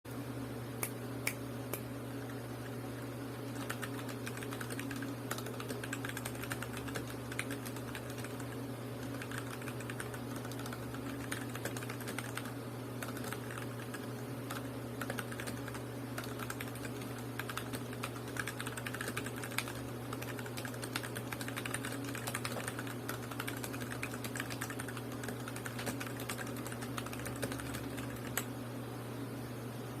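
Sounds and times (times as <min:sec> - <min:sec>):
steady low hum: 0:00.1 - 0:30.0
mechanical keyboard typing: 0:03.5 - 0:28.5.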